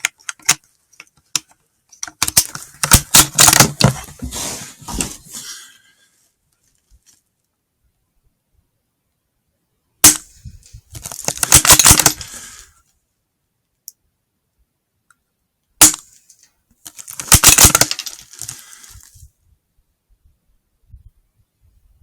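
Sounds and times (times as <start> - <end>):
dense clattering and rustling: 2.0 - 5.6.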